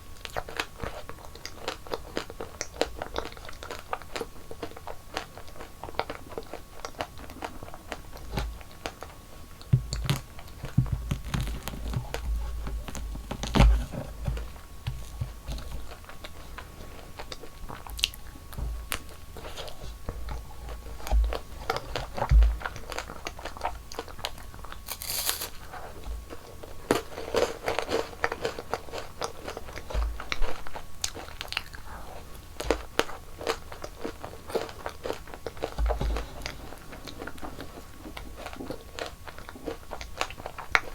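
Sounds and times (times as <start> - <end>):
chewing crunchy sweets: 0.0 - 40.9
soft mouth thumps: 9.7 - 15.9.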